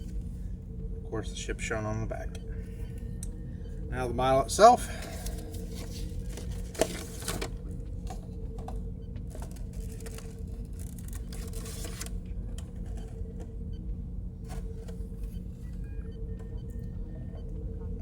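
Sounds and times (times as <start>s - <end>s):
steady low hum: 0.0s - 18.0s
packaging clicks and rustles: 4.9s - 13.5s.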